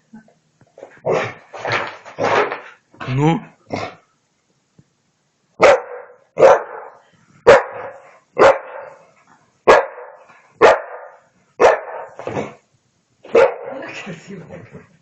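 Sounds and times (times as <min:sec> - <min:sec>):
dog barking: 0:05.6 - 0:09.1, 0:09.7 - 0:12.6, 0:13.3 - 0:13.8.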